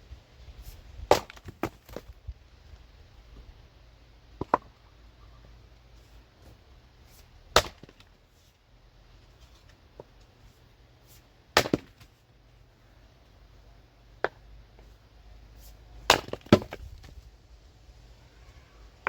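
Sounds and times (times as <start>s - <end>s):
axe chopping firewood: 1.1s - 2.1s, 4.4s - 4.7s, 7.5s - 8.1s, 11.6s - 12.1s, 16.0s - 17.0s.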